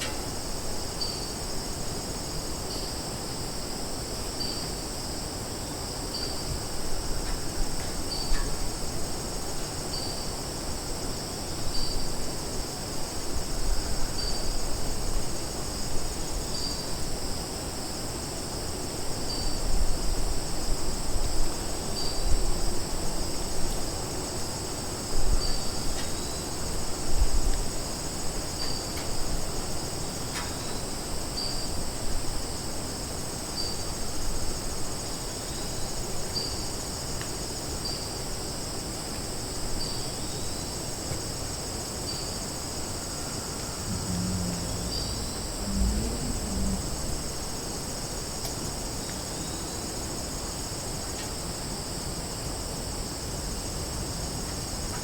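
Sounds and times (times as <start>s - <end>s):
crickets and insects chorus: 0.0s - 55.0s
low rumble: 43.7s - 48.2s.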